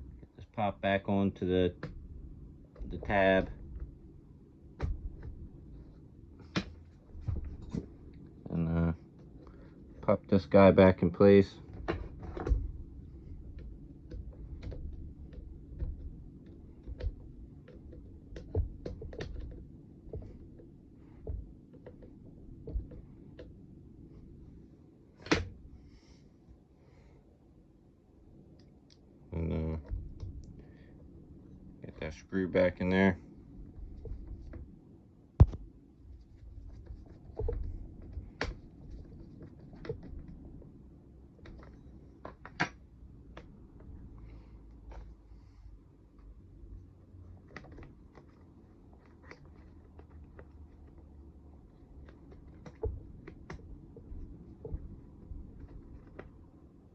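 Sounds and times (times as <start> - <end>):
low steady hum: 0.0 - 56.9
plastic parts clicking and knocking: 13.5 - 23.6, 41.4 - 43.9, 51.7 - 56.4.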